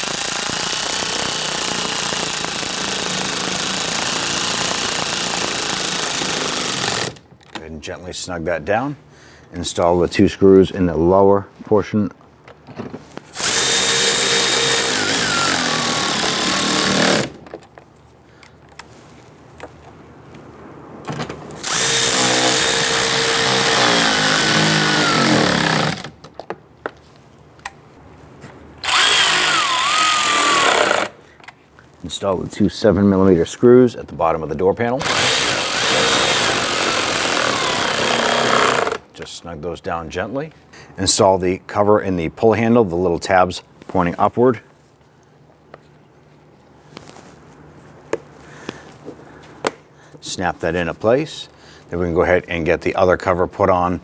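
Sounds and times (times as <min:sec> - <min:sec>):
cordless drill whining: 0:00.0 - 0:07.2, 0:13.4 - 0:17.4, 0:21.6 - 0:26.1, 0:28.8 - 0:31.2, 0:35.0 - 0:39.0
power driver driving screw: 0:00.0 - 0:07.2, 0:13.4 - 0:17.5, 0:21.6 - 0:26.2, 0:28.8 - 0:31.2, 0:35.0 - 0:39.0.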